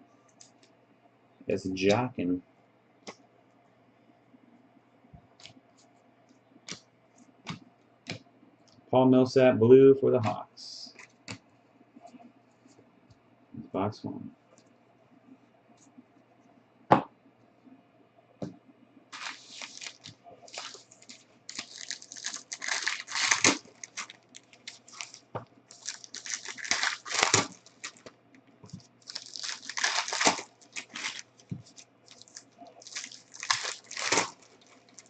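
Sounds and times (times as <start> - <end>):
plastic and foil packaging crinkling: 19.1 - 35.0.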